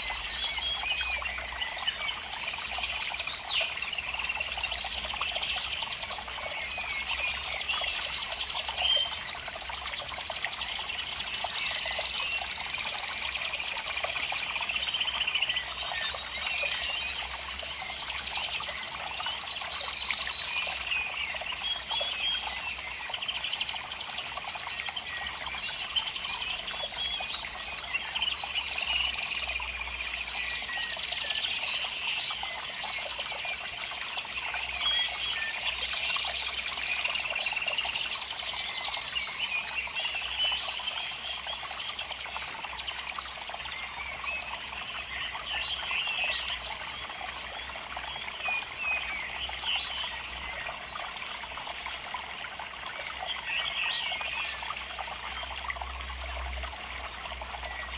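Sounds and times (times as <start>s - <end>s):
small birds chirping and trilling: 0.0s - 57.9s.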